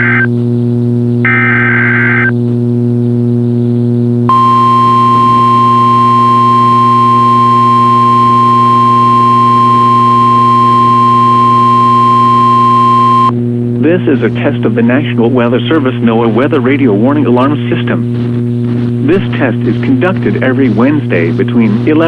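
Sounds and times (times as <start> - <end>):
low electrical hum: 0.0 - 22.0
steady warning alarm tone: 4.3 - 13.3.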